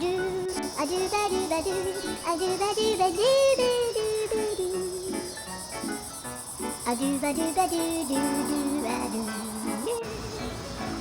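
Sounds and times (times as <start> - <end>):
insects chirping in a high trill: 0.0 - 11.0.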